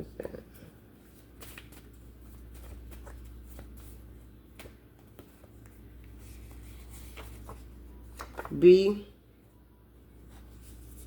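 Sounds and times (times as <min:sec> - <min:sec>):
low steady hum: 0:00.0 - 0:11.0
deck of cards being handled: 0:01.0 - 0:09.0.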